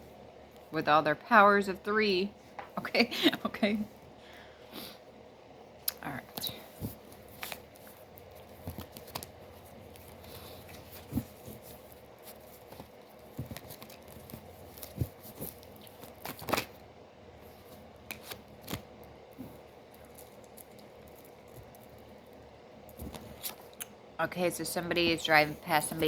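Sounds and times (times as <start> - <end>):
cards being shuffled: 6.2 - 16.8, 17.6 - 22.0, 22.9 - 23.8.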